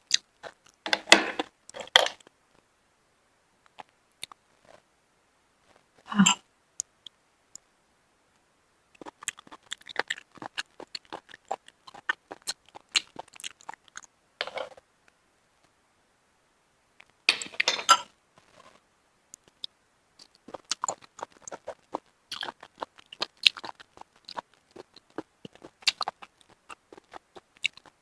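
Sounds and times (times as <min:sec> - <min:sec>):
person chewing food: 0:00.0 - 0:01.9, 0:09.0 - 0:14.8, 0:19.4 - 0:28.0.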